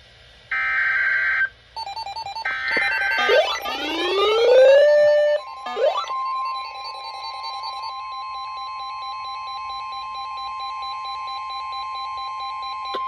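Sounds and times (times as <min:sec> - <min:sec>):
steady electronic alarm tone: 0:00.6 - 0:13.0
rapid pulsing beep: 0:01.8 - 0:13.0.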